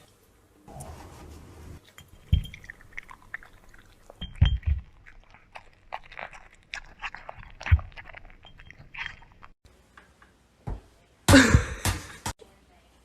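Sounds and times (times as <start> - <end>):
crunchy chewing: 1.8 - 9.6.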